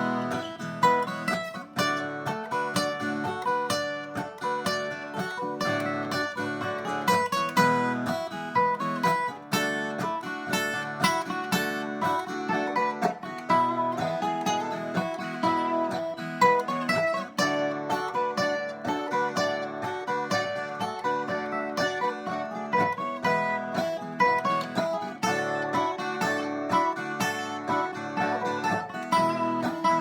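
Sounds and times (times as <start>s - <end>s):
acoustic guitar playing: 0.0s - 30.0s.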